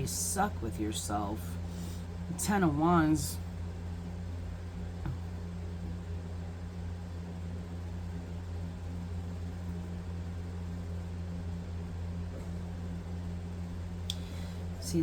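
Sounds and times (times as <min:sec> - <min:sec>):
low hum: 0:00.0 - 0:15.0.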